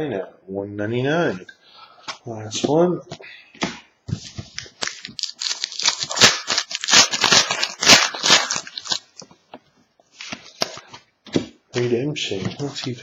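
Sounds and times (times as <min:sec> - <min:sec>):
wrapper being torn and crinkled: 0:04.6 - 0:09.2.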